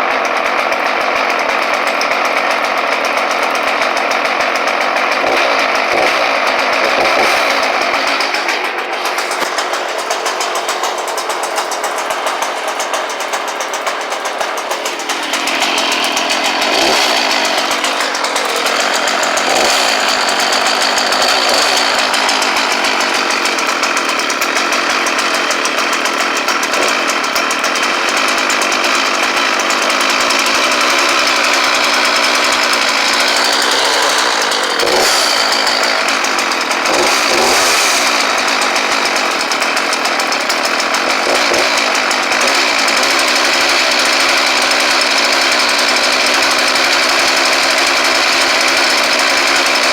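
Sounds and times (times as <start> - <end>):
chainsaw engine running: 0.0 - 49.9.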